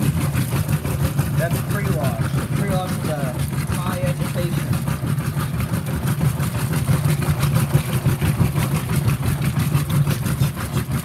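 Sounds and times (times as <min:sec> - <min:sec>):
washing machine agitating: 0:00.0 - 0:11.0.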